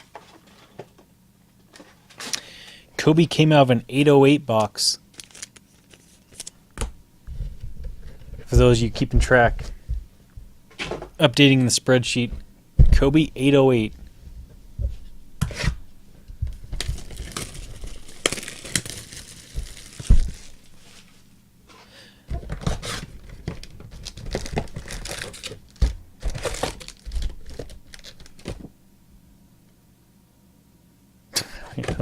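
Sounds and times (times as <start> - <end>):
card pack wrappers crinkling and tearing: 4.7 - 6.6, 16.5 - 21.2, 22.4 - 28.7.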